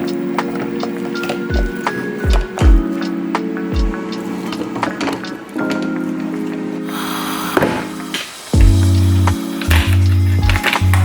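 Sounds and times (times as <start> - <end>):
ticking hi-hats: 0.0 - 5.6, 8.4 - 11.0
background music with beat: 0.0 - 11.0
held chords: 0.0 - 11.0
deep kick drum: 1.5 - 2.9, 3.8 - 4.0, 8.6 - 9.4, 10.3 - 10.8.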